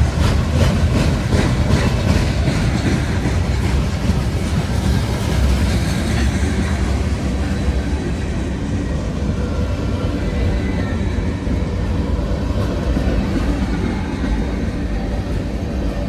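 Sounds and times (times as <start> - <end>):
train wheels clicking over rail joints: 0.0 - 7.9
freight train rumbling: 0.0 - 16.0.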